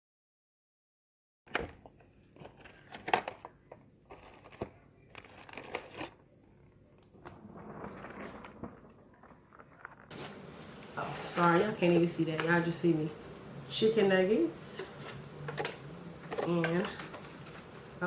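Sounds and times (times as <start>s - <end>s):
plastic food packaging crinkling: 2.2s - 6.3s, 8.0s - 10.1s.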